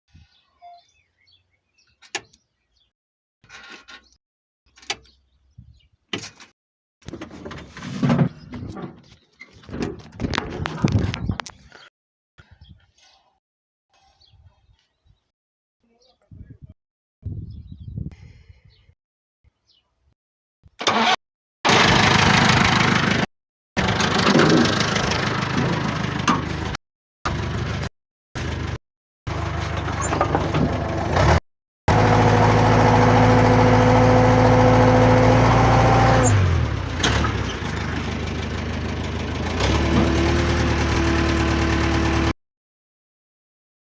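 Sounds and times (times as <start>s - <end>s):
diesel engine running: 21.7s - 42.3s.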